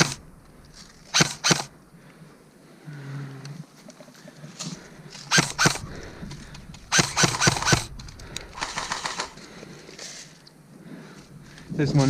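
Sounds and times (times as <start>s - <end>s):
airsoft rifle shots: 0.0s - 0.3s, 1.1s - 1.7s, 5.3s - 6.1s, 6.8s - 9.4s.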